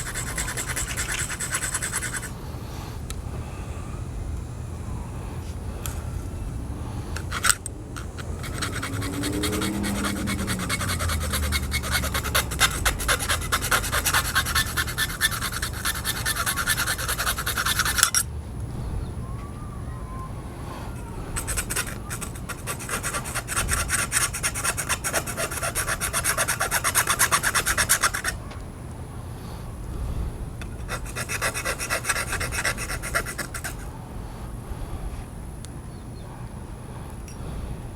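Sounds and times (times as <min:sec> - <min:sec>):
hand file rasping on metal: 0:00.0 - 0:02.3, 0:07.2 - 0:18.3, 0:21.4 - 0:28.4, 0:30.8 - 0:33.9.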